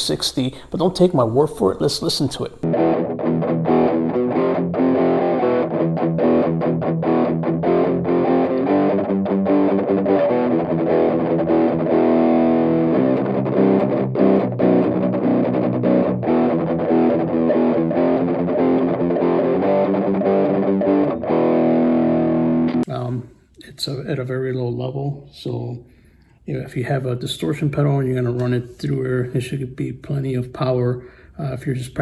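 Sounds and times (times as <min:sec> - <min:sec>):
electric guitar chords and notes: 0:02.6 - 0:23.2.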